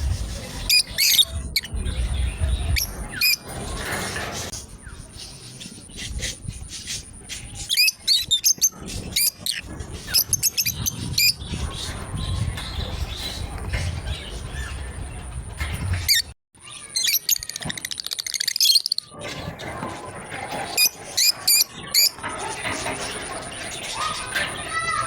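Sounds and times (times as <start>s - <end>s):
birds chirping: 0.0s - 25.0s.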